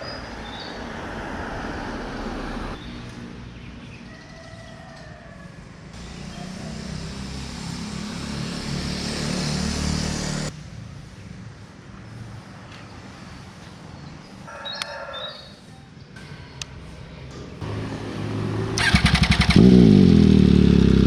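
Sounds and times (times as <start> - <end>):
motorcycle engine running: 18.6 - 21.0.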